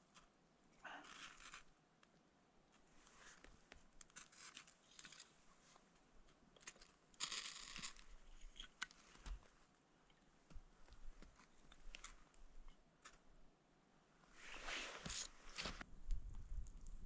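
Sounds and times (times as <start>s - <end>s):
rustling and crinkling: 2.7s - 13.4s, 14.3s - 17.0s.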